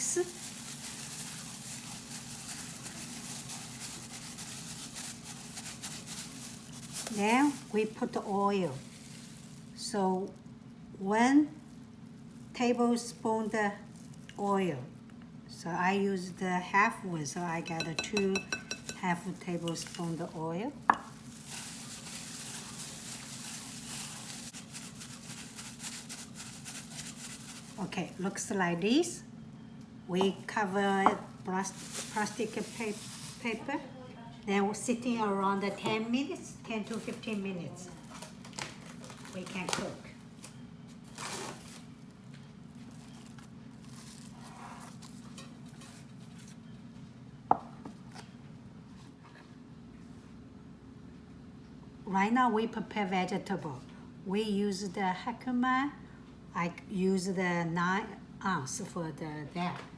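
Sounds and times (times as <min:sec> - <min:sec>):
wet rustling of food mixing: 0:00.0 - 0:15.1, 0:17.4 - 0:28.8, 0:30.3 - 0:33.8, 0:36.8 - 0:46.7.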